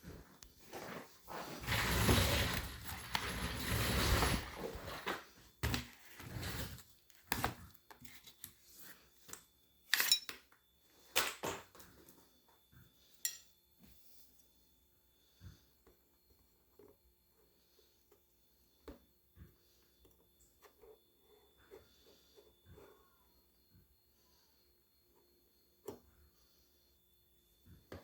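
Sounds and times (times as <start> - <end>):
cardboard box scraping: 1.1 - 5.3, 6.0 - 6.9.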